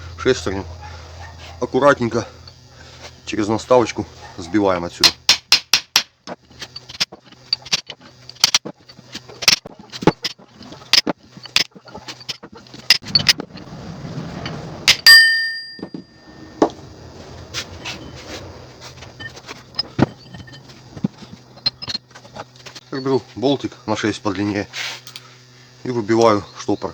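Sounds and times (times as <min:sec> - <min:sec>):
ringing metal clang: 0:14.9 - 0:16.3.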